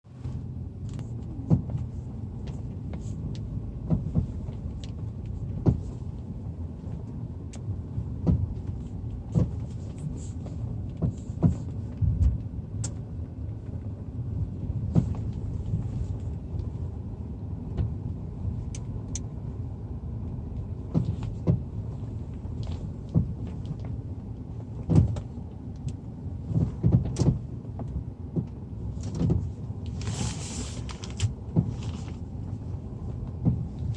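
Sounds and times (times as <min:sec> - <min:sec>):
low road noise rumble: 0:00.0 - 0:33.9
car suspension knocking: 0:22.6 - 0:24.0, 0:26.4 - 0:29.6, 0:33.2 - 0:33.9.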